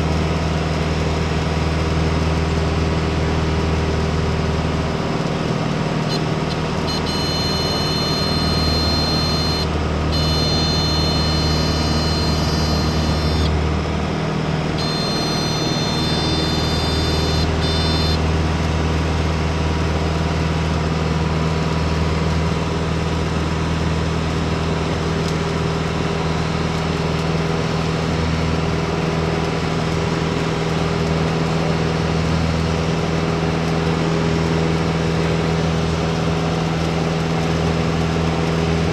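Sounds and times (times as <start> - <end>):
aircraft engine droning: 4.8 - 18.8
stall warning horn buzzing: 6.1 - 13.7, 14.6 - 18.3.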